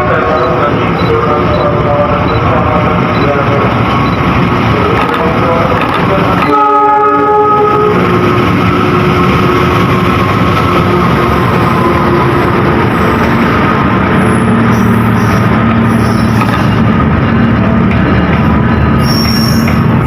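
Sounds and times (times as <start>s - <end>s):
train running past: 0.0s - 20.0s
train horn: 6.4s - 9.6s.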